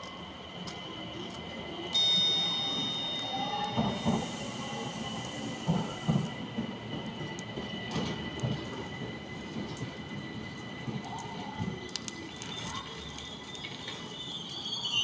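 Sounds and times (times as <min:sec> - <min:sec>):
train on rails: 0:00.0 - 0:15.0
high-pitched whine: 0:01.9 - 0:06.4.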